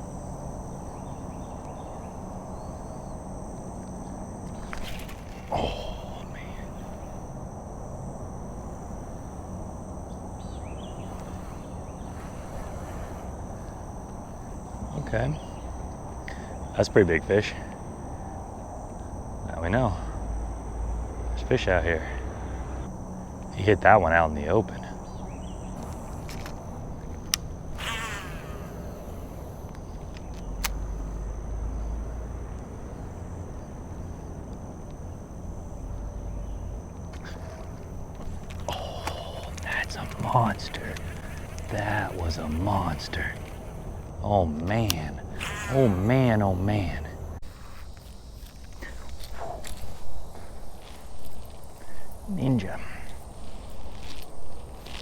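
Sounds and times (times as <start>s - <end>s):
high insect drone: 0.0s - 55.0s
sharp click: 29.7s - 30.9s.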